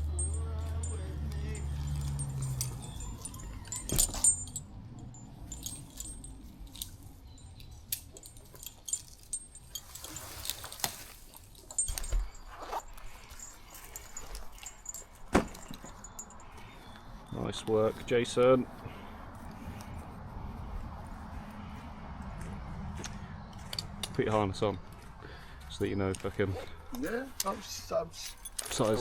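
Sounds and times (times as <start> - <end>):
metallic clinking of gear: 0.0 - 17.0, 26.1 - 29.0.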